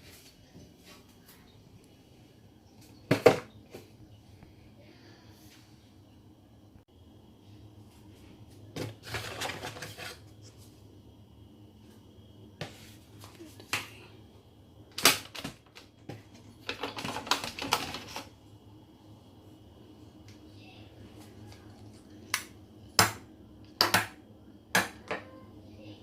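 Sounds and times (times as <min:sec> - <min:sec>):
hard objects clicking and rattling: 0:16.6 - 0:18.3.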